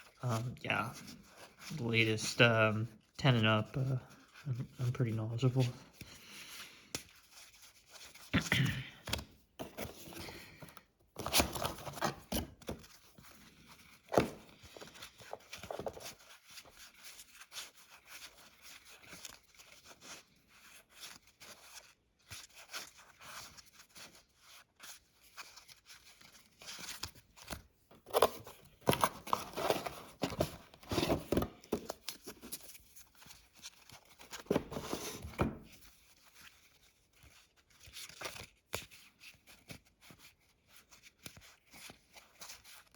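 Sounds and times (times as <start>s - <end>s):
paper and plastic rustling: 9.1s - 42.9s.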